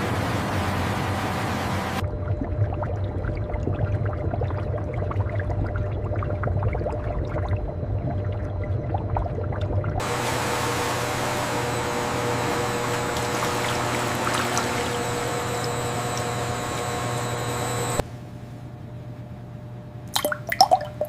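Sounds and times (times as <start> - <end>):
machine hum: 0.0 - 20.1
running water rushing: 10.0 - 18.0.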